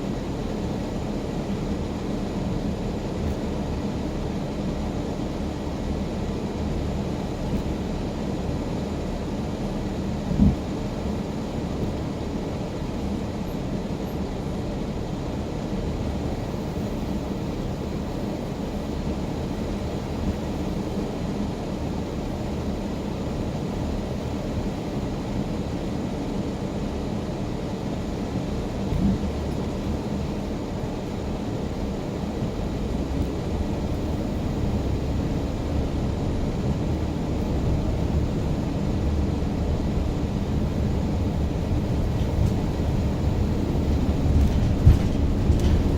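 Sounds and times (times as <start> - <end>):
car road and engine rumble: 0.0 - 45.9.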